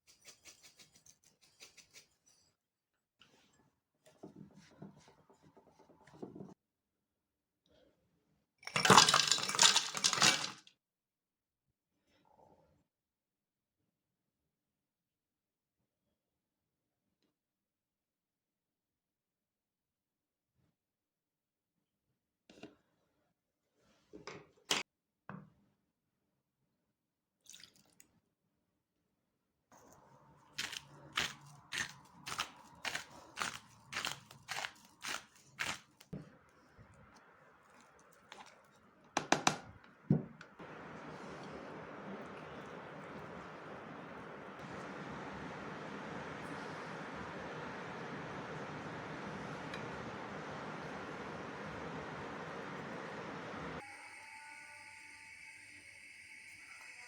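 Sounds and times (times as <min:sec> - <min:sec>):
person chewing crunchy food: 0:30.5 - 0:36.1.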